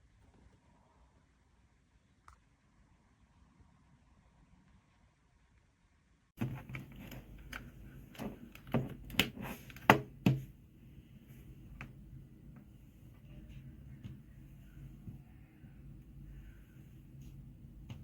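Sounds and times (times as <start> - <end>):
low steady hum: 6.4 - 18.0.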